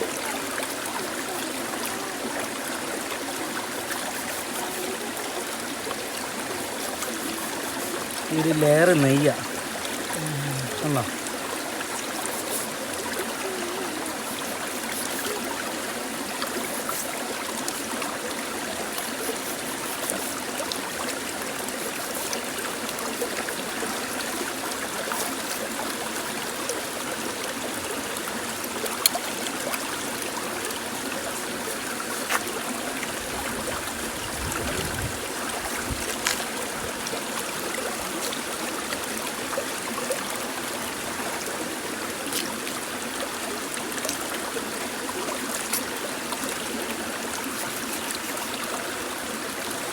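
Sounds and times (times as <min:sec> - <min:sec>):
running water: 0:00.0 - 0:49.9.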